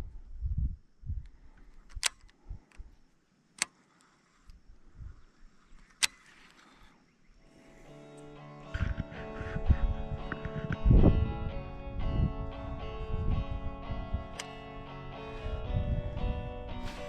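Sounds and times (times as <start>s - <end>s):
sharp clicks: 1.6s - 2.9s, 3.5s - 4.1s, 5.7s - 6.8s, 8.1s - 11.0s, 14.2s - 15.3s
music: 7.5s - 17.0s.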